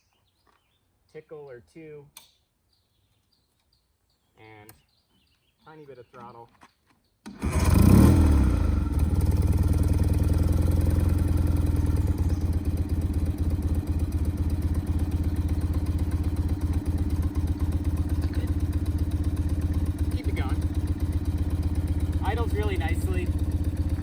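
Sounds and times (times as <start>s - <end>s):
motorcycle engine starting and idling: 7.2s - 24.0s.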